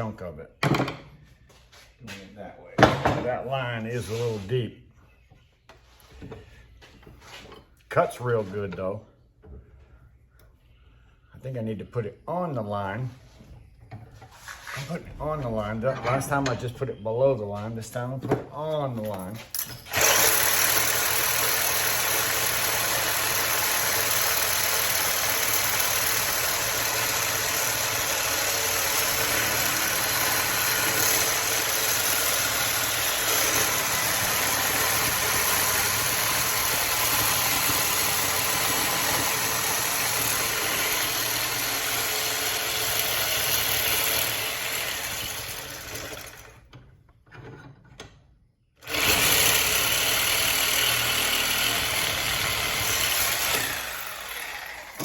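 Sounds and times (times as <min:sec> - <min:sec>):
power saw cutting metal: 0:19.6 - 0:46.6, 0:48.8 - 0:55.0.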